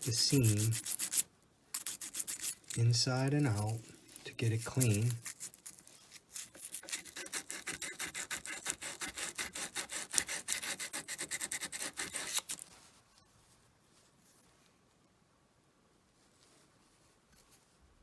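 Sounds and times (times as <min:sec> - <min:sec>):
sandpaper rubbing on metal: 0:00.0 - 0:01.2, 0:01.8 - 0:12.6.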